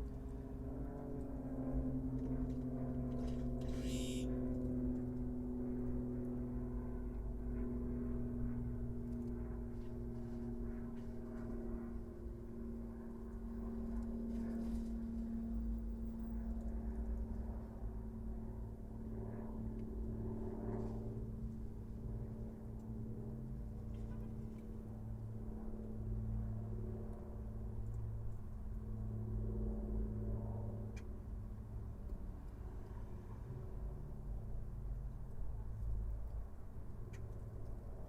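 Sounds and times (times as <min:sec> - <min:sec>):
car engine droning while driving: 0:03.1 - 0:04.3.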